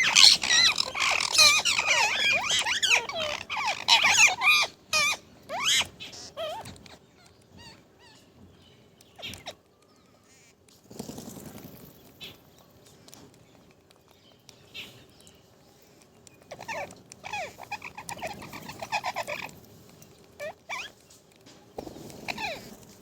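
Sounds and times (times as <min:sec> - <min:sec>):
parrot chattering: 0:00.0 - 0:07.0, 0:16.4 - 0:19.6, 0:20.4 - 0:21.0, 0:21.8 - 0:22.8.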